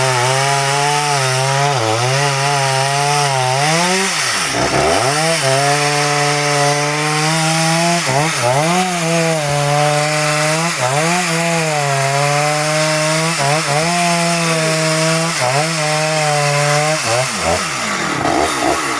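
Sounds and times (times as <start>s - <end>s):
chainsaw cutting wood: 0.0s - 18.9s.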